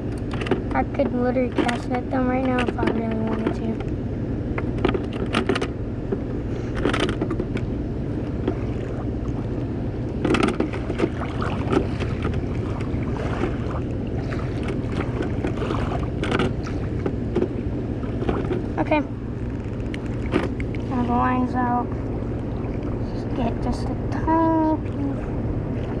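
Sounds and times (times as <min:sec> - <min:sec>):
knocks and clicks: 0:00.0 - 0:04.0, 0:04.6 - 0:07.7, 0:10.1 - 0:12.4, 0:14.6 - 0:17.6, 0:18.2 - 0:18.8, 0:19.4 - 0:20.9
machine humming: 0:00.0 - 0:26.0.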